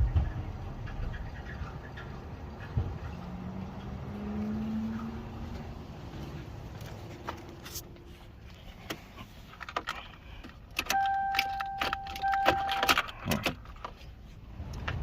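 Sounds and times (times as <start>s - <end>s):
car keys jangling in ignition: 9.5s - 14.0s.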